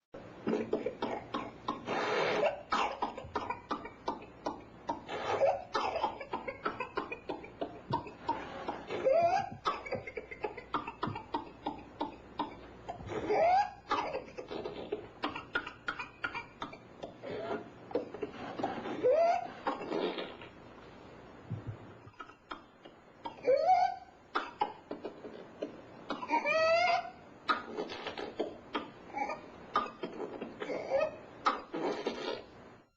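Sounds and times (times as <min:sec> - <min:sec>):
baby coughing fits: 0:00.5 - 0:18.9.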